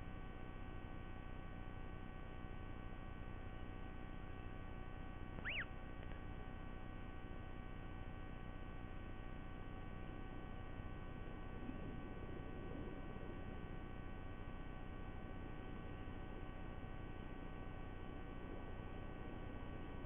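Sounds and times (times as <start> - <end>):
steady electrical hum: 0.0 - 20.0
high-pitched bird chirp: 5.4 - 5.8.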